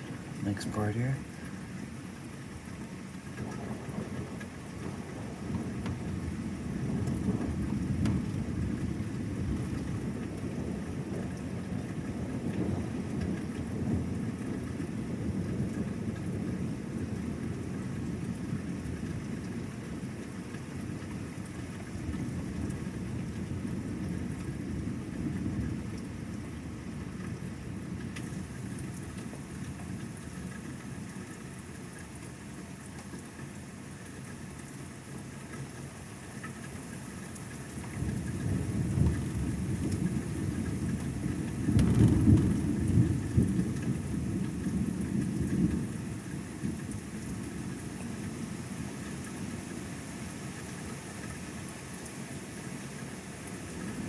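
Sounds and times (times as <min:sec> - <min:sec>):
rain falling: 0:00.0 - 0:54.0
thunder rumbling: 0:03.4 - 0:19.3, 0:37.9 - 0:48.2.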